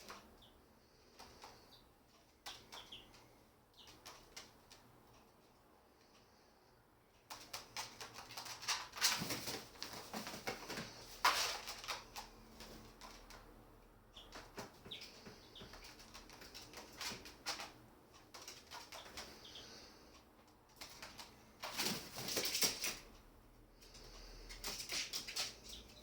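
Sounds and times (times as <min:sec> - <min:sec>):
birds rustling and flapping: 0:07.3 - 0:13.6, 0:14.2 - 0:23.1, 0:23.8 - 0:25.9.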